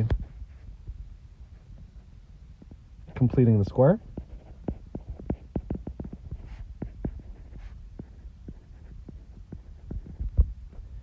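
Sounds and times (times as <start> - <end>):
low steady hum: 0.0 - 11.0
light taps and clicks: 4.0 - 10.8.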